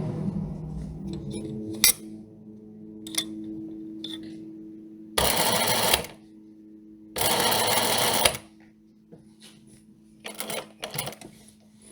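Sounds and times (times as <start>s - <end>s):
sewing machine stitching: 10.3s - 11.4s.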